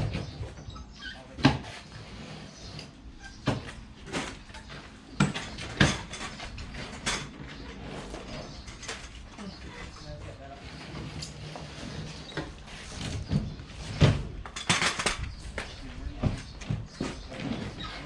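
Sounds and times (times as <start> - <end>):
heavy objects knocking and thumping: 3.4 - 7.6.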